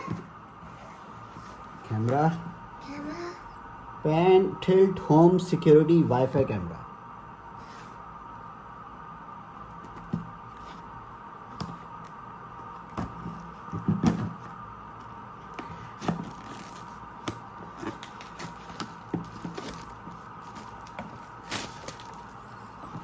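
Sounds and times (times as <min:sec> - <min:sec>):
faint steady hum: 0:00.0 - 0:23.0
packaging clicks and knocks: 0:15.5 - 0:23.0.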